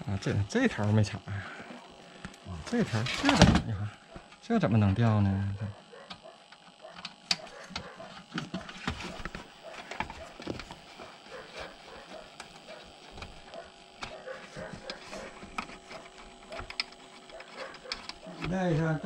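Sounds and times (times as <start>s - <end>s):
cable plugs and plastic parts clicking: 6.0s - 19.0s.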